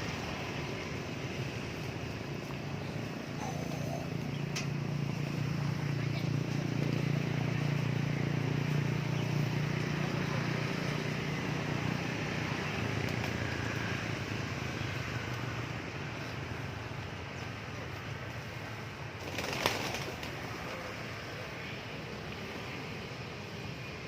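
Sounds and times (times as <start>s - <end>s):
low engine hum: 0.0s - 24.0s
pigeon wings flapping: 13.0s - 13.4s, 19.1s - 20.9s.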